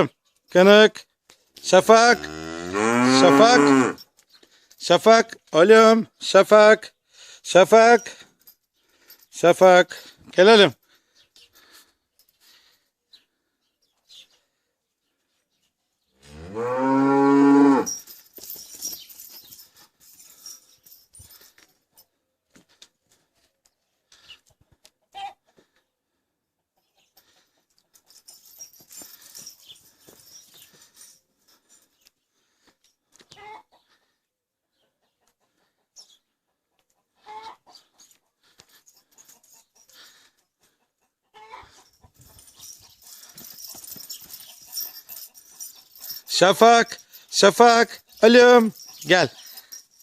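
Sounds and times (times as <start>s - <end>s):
calf mooing: 2.0s - 4.0s, 16.3s - 17.9s
chickens clucking: 34.7s - 38.4s, 39.1s - 43.2s.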